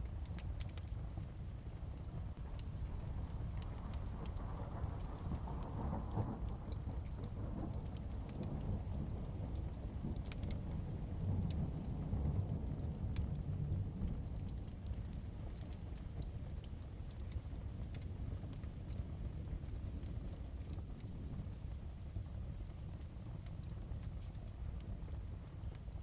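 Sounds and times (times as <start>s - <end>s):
heavy rain: 2.2s - 24.0s
low rolling thunder: 2.4s - 22.3s.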